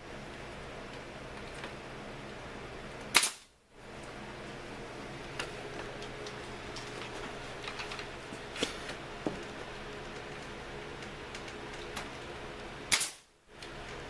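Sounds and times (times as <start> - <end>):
nail gun firing into wood: 3.1 - 3.5, 12.9 - 13.3.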